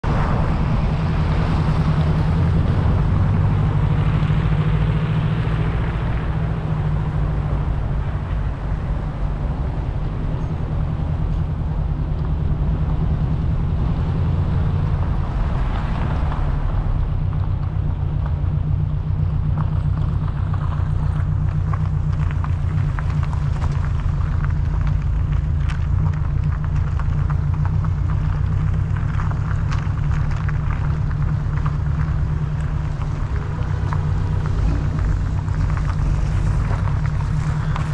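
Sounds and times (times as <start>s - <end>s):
car engine and road rumble: 0.0s - 37.9s.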